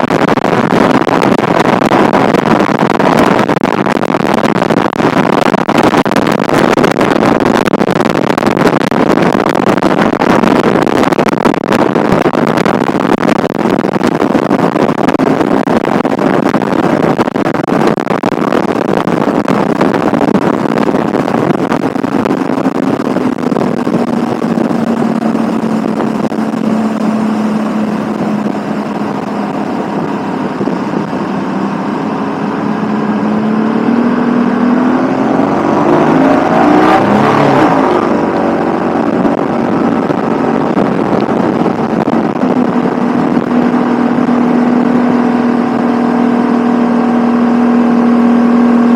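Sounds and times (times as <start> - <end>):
wind buffeting microphone: 0.0 - 48.9.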